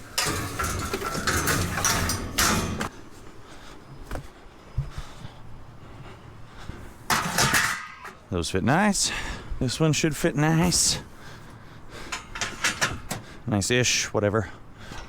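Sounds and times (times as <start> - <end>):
scrap metal clattering: 0.0 - 2.9, 7.0 - 8.3, 12.0 - 13.3.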